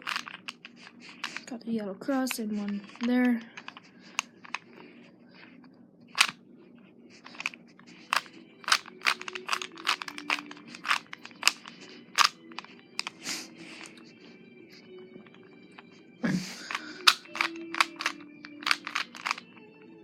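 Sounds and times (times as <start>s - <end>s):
puzzle cube plastic clicks: 0.0s - 1.5s, 2.3s - 4.7s, 6.2s - 6.4s, 7.2s - 14.0s, 16.6s - 19.4s.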